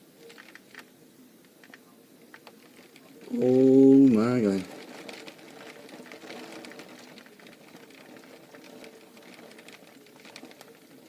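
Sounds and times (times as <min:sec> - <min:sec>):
heavy rain pouring: 0:02.4 - 0:11.0.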